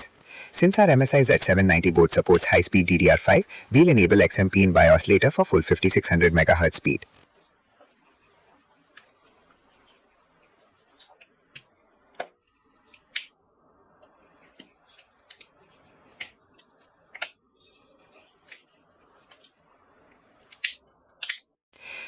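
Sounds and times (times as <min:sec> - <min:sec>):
computer parts clicking and snapping: 0:13.0 - 0:13.3, 0:20.5 - 0:21.5.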